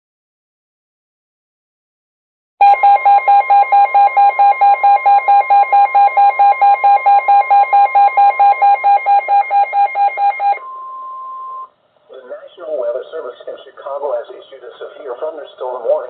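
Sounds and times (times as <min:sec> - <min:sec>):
steady alarm tone: 0:02.6 - 0:11.7.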